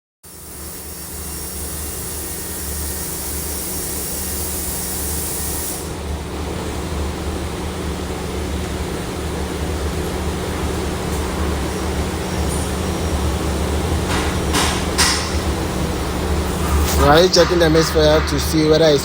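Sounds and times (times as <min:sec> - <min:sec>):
hiss: 0:00.3 - 0:06.0.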